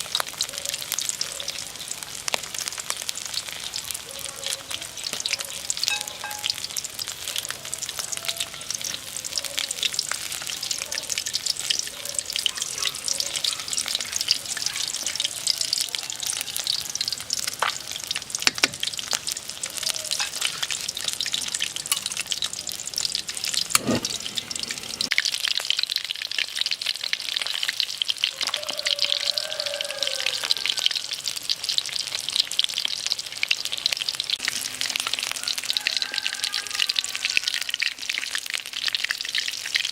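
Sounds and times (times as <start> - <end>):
fish frying in hot oil: 0.0 - 39.9.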